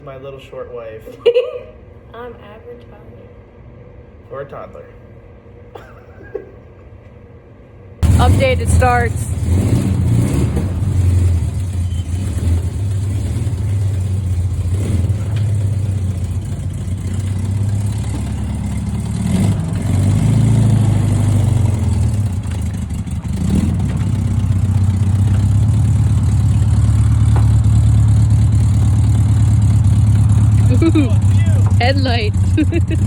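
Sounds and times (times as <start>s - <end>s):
car engine idling and revving: 8.0s - 33.0s.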